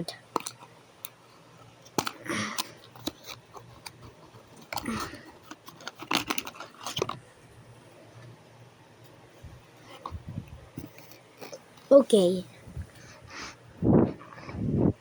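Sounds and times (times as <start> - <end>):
crinkling rustles: 0.3 - 7.2.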